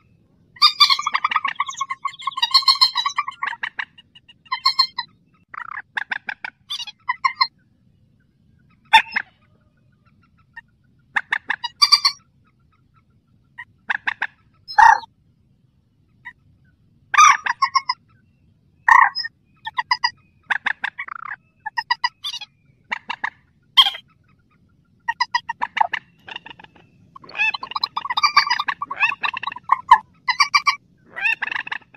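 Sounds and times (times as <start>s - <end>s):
rail bird pulsed calls: 0.0s - 5.8s, 16.2s - 31.9s.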